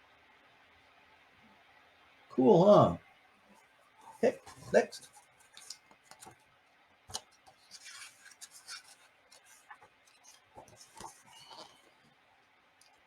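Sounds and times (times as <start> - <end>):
paper pages rustling and turning: 4.4 - 6.4, 7.1 - 12.1.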